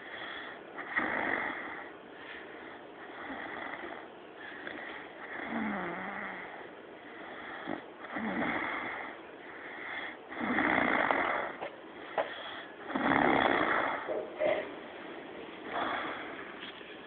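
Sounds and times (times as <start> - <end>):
man snoring: 0.8 - 1.9, 3.1 - 4.0, 4.7 - 6.6, 7.4 - 9.2, 10.3 - 11.6, 12.8 - 14.1, 15.7 - 16.4.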